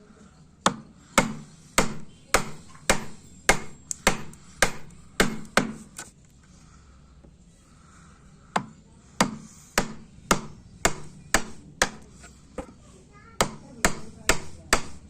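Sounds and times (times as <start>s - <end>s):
tool knocking on wood: 13.4s - 15.0s.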